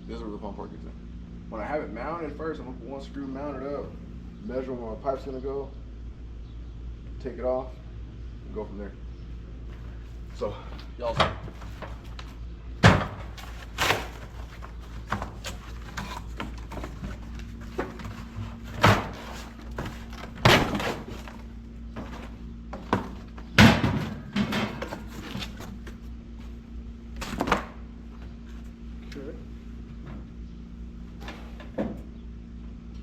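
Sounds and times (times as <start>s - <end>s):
faint steady hum: 0.0s - 33.0s.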